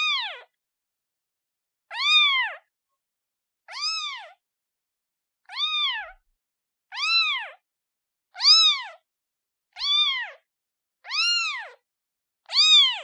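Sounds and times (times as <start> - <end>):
kitten meowing: 0.0 - 0.5, 1.9 - 2.6, 3.7 - 4.4, 5.4 - 6.2, 6.9 - 7.6, 8.4 - 9.0, 9.8 - 10.4, 11.0 - 11.8, 12.4 - 13.0.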